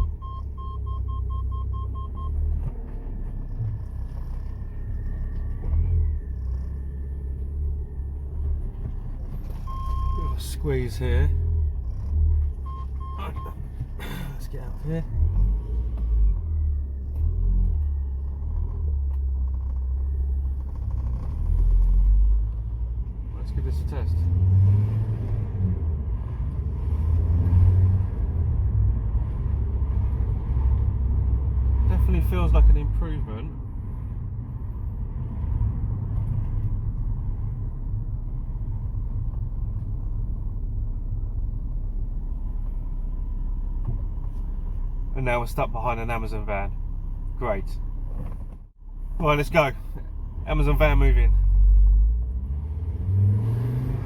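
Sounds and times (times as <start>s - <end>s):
car engine running: 0.0s - 24.2s, 28.9s - 54.0s.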